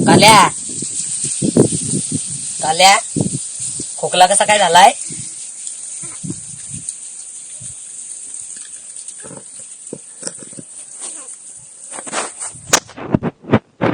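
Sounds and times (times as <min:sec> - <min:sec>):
crow hoarse calls: 0:05.9 - 0:06.4, 0:08.5 - 0:11.6.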